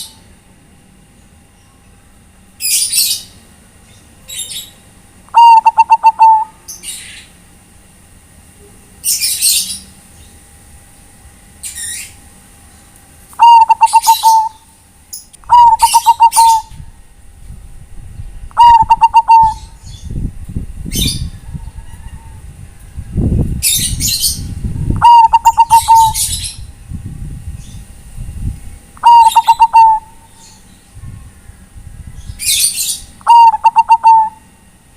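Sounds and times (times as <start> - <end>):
dove cooing: 5.3 - 6.6, 13.4 - 14.6, 15.4 - 16.7, 18.5 - 19.8, 25.0 - 26.4, 29.0 - 30.3, 33.2 - 34.4.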